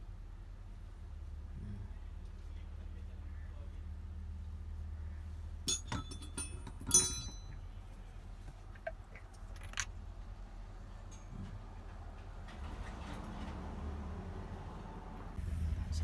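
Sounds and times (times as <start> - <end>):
steady low hum: 0.0 - 12.3, 14.8 - 16.0
small metal objects clinking: 5.7 - 7.6.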